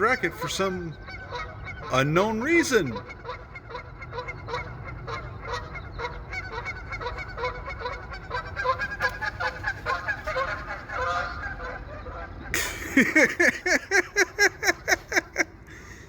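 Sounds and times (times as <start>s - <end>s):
geese honking: 0.0s - 16.0s.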